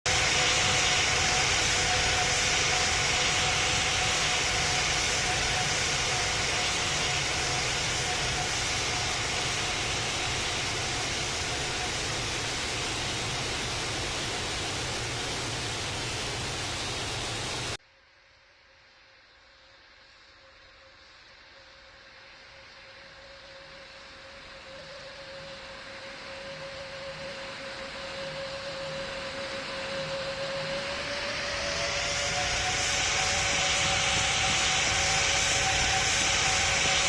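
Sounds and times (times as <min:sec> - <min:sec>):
jet engines roaring: 0:00.1 - 0:17.8, 0:27.8 - 0:37.0.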